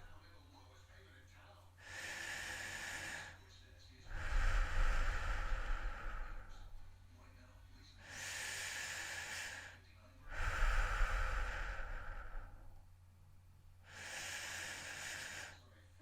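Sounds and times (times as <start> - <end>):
person breathing heavily: 1.8 - 3.4, 4.0 - 6.9, 8.0 - 12.8, 13.8 - 15.7
breath blowing on microphone: 4.1 - 6.8, 10.3 - 12.8.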